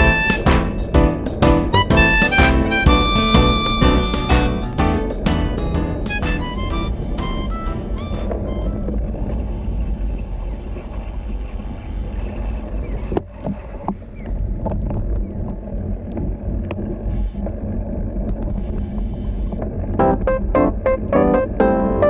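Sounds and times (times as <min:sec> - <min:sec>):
music: 0:00.0 - 0:08.8, 0:20.0 - 0:22.0.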